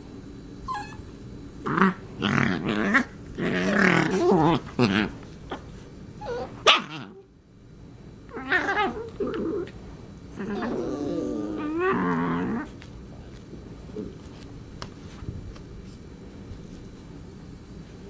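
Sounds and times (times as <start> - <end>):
puppy yelp: 0.6 - 1.1, 6.2 - 7.0
puppy growling playfully: 0.7 - 7.3, 8.3 - 12.9.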